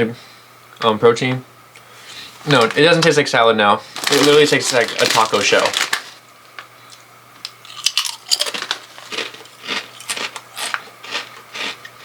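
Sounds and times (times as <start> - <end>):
chips being chewed: 4.0 - 6.2, 7.6 - 12.0.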